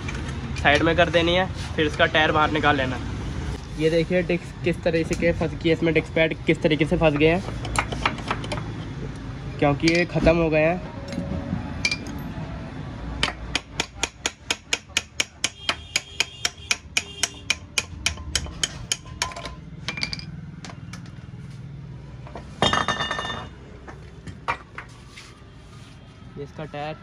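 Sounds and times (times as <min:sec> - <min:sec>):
hammer striking metal: 0:13.2 - 0:20.3.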